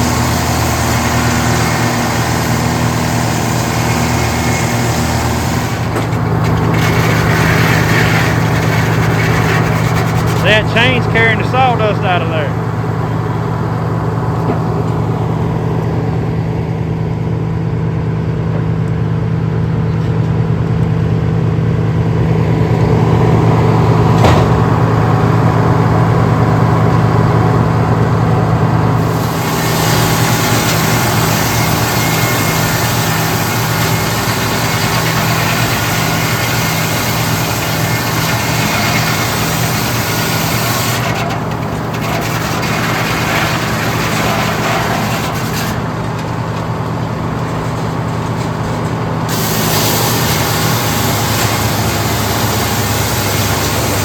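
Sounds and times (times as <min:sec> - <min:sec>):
circular saw cutting wood: 0:00.0 - 0:13.2, 0:28.9 - 0:48.6, 0:49.2 - 0:54.0
sawmill engine drone: 0:00.0 - 0:54.0.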